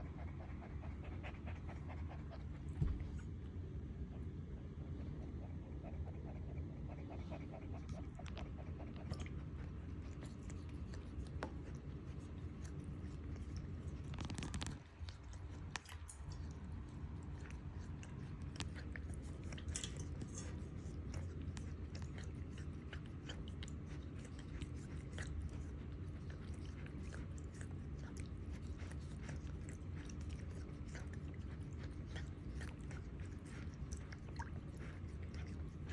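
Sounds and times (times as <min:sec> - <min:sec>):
steady low rumble: 0:00.0 - 0:35.9
small irregular clicks: 0:10.1 - 0:35.9.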